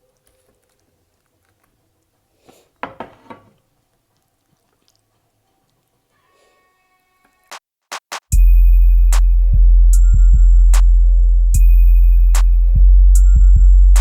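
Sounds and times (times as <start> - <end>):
wet smacking and chewing: 0.0 - 2.2, 3.8 - 6.0.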